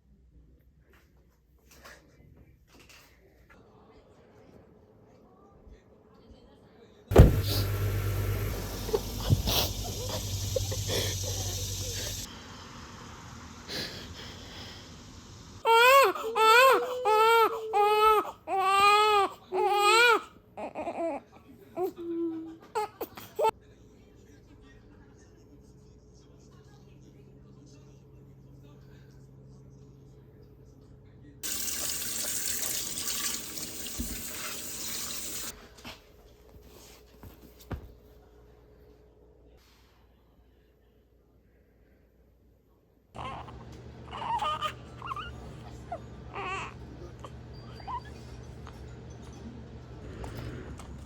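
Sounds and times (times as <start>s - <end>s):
newborn baby crying: 15.6s - 23.5s, 43.2s - 48.1s
tap water running into sink: 31.4s - 35.5s.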